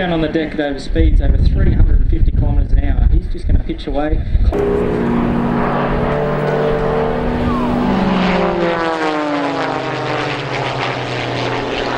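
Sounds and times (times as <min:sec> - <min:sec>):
propeller aircraft passing low: 0:04.5 - 0:11.9.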